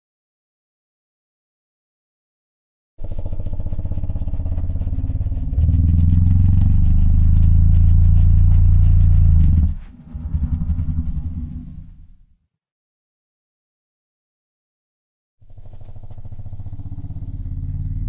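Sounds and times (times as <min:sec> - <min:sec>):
engine running with rapid pulse: 0:03.0 - 0:12.2, 0:15.4 - 0:18.0.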